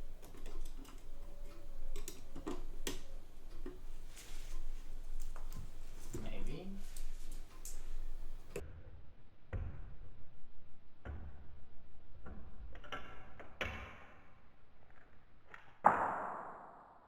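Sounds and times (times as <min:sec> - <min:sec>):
screwdriver scraping: 0:00.0 - 0:06.2
screwdriver clicking and tapping: 0:00.1 - 0:06.2.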